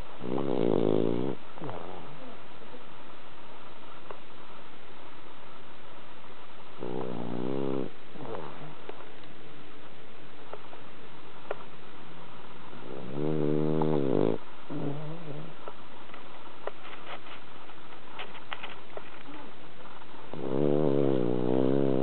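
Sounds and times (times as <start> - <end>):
dog snoring: 0.0 - 2.4, 6.8 - 8.9, 12.7 - 15.7, 20.3 - 22.0.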